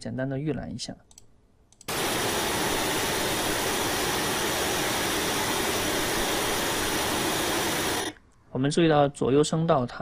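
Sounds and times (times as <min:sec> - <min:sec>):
electronic noise hiss: 0:01.9 - 0:08.2.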